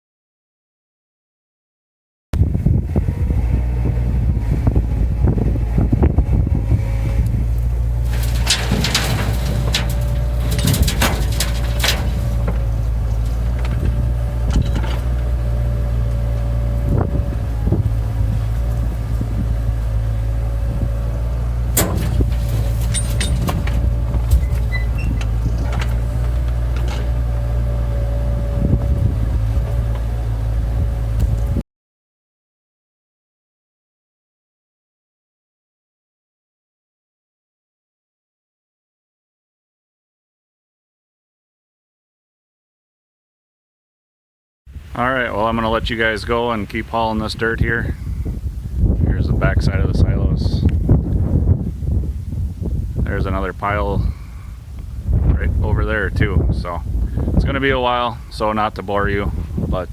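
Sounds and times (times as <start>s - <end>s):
engine whine: 2.4s - 31.6s
wind gusts on microphone: 2.4s - 31.6s, 44.7s - 59.9s
excavator diesel engine running: 2.7s - 31.6s
knocks of digging: 7.9s - 15.2s, 21.7s - 27.2s.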